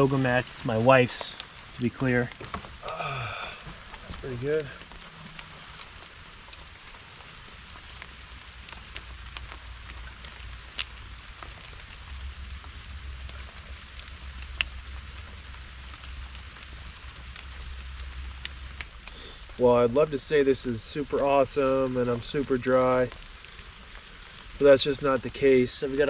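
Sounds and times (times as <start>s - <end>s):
steady rain on roof: 0.0s - 26.0s.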